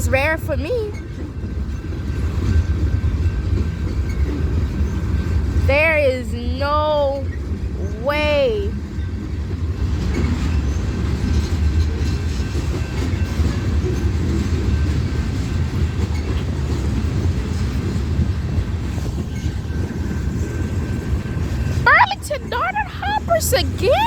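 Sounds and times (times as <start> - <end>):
train wheels rumbling on rails: 0.0 - 24.0.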